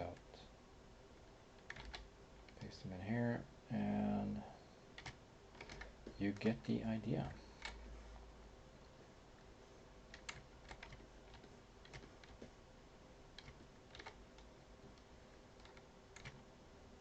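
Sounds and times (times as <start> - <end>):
low room hum: 0.0 - 17.0
computer keyboard typing: 1.6 - 2.7, 5.0 - 6.2, 7.4 - 7.9, 10.1 - 12.5, 13.3 - 14.5, 15.6 - 16.4.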